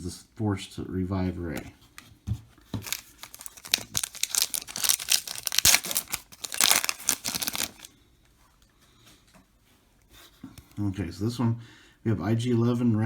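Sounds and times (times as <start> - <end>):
foil wrapper tearing and crinkling: 2.8 - 7.9.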